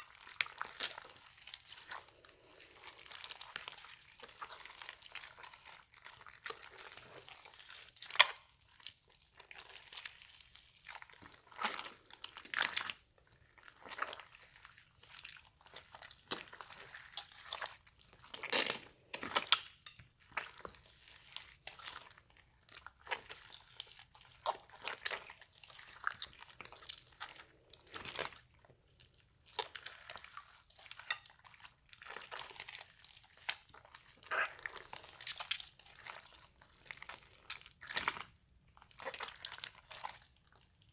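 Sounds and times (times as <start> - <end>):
slime squished by hand: 29.4 - 40.7.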